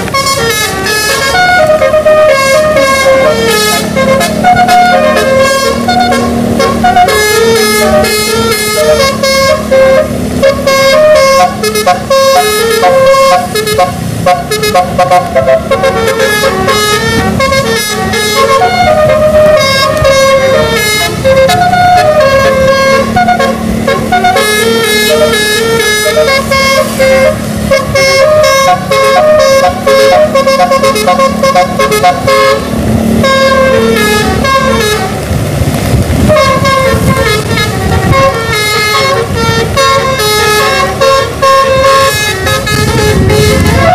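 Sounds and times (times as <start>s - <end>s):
bus engine rumble: 0.0s - 43.9s
bus musical air horn melody: 0.0s - 43.9s.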